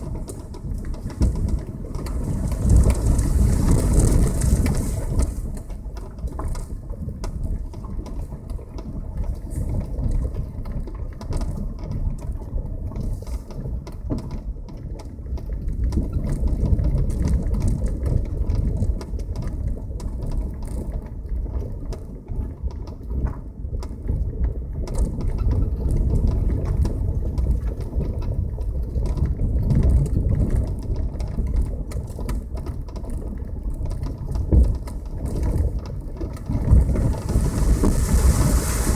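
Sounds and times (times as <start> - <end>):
car driving over uneven road: 36.4 - 38.9.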